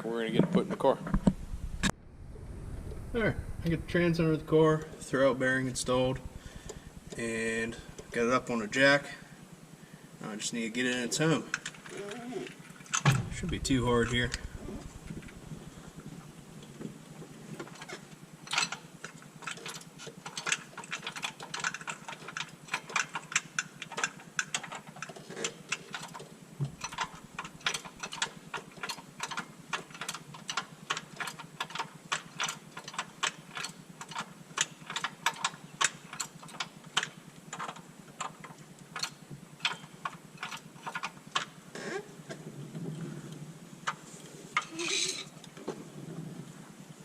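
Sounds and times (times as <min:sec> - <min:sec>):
rapid metallic clicks and knocks: 0:11.3 - 0:41.6.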